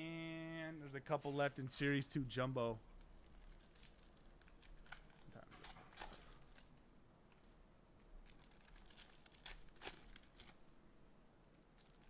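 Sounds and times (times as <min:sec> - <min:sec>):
plastic wrap crinkling: 0:03.0 - 0:06.8, 0:08.2 - 0:10.7, 0:11.5 - 0:12.0.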